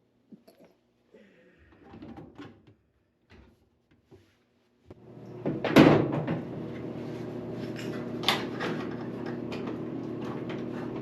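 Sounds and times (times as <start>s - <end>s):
dryer motor hum: 5.0s - 11.0s.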